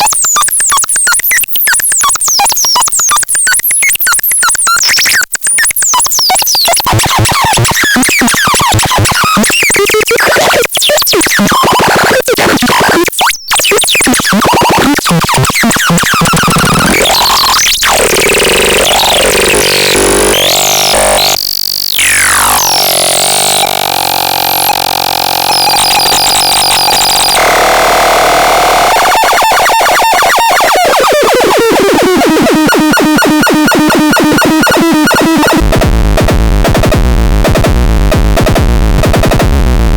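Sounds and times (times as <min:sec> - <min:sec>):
synthesizer glitchy noise: 0:00.0 - 0:39.9
synthesizer pulsing pattern: 0:13.6 - 0:39.9.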